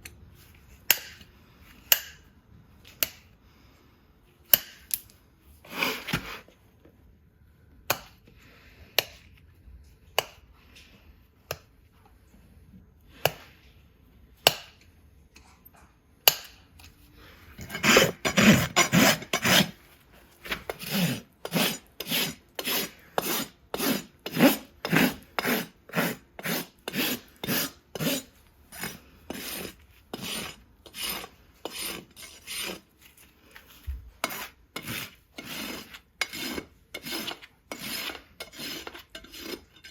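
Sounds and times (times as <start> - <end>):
hoof rasp filing: 17.6 - 19.8, 20.6 - 32.9, 34.2 - 39.9.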